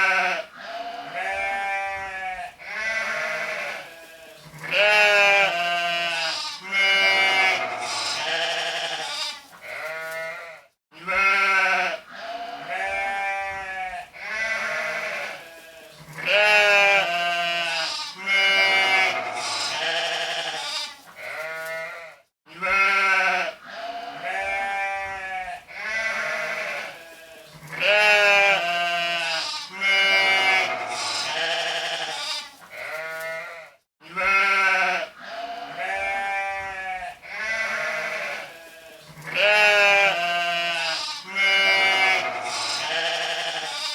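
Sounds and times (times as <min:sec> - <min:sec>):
sheep bleating: 0:00.0 - 0:43.9.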